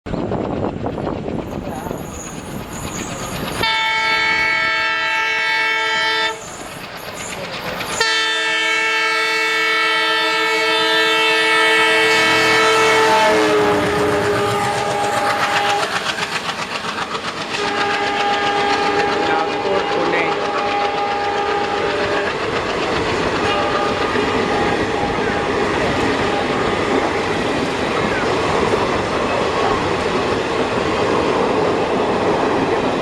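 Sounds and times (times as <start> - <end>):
train wheels clickety-clack: 0.1 - 33.0
locomotive horn blasts: 3.6 - 6.4, 8.0 - 16.0, 17.6 - 22.4, 23.4 - 26.6.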